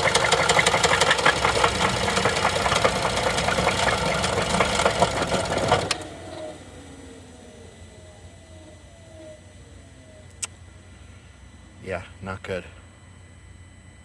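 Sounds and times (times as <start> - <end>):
rapid engine tapping clatter: 0.0 - 6.4
car engine idling: 0.0 - 10.9.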